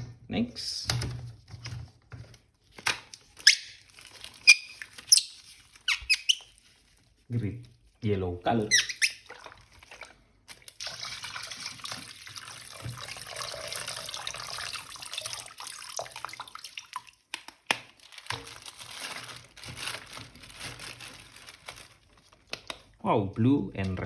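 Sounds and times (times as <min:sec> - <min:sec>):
tap water running and splashing: 0:09.0 - 0:17.4.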